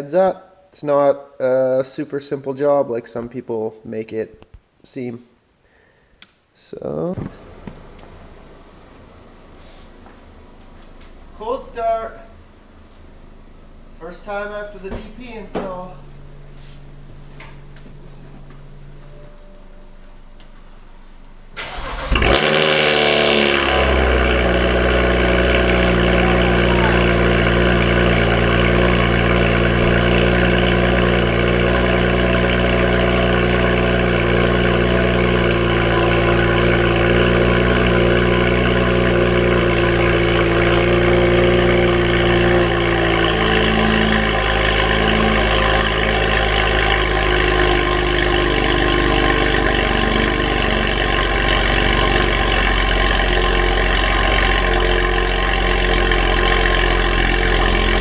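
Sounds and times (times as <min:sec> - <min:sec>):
car engine idling loudly: 0:21.6 - 0:58.0.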